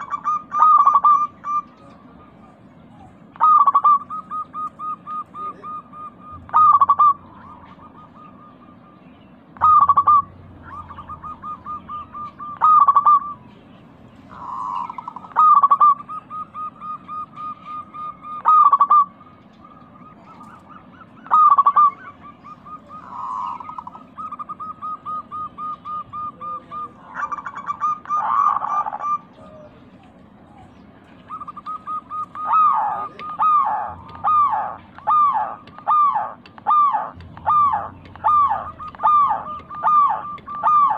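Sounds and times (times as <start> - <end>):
dove cooing: 0.0 - 40.9.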